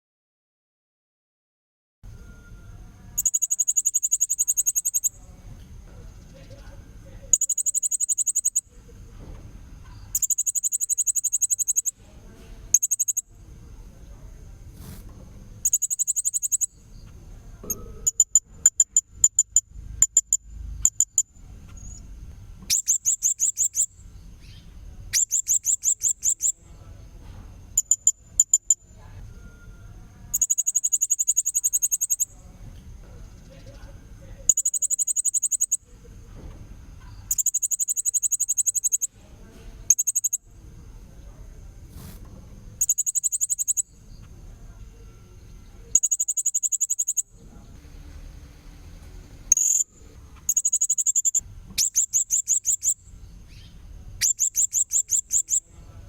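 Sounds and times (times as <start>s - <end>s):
faint steady high tone: 2.0s - 8.8s, 27.8s - 32.5s, 42.8s - 47.8s
sharp bird chirps: 3.2s - 5.2s, 7.3s - 8.7s, 9.9s - 12.0s, 12.8s - 13.3s, 15.6s - 17.2s, 22.7s - 26.6s, 27.8s - 28.8s, 30.3s - 32.4s, 34.5s - 35.8s, 37.1s - 39.1s, 39.9s - 40.4s, 42.8s - 44.3s, 45.9s - 47.4s, 48.6s - 55.7s.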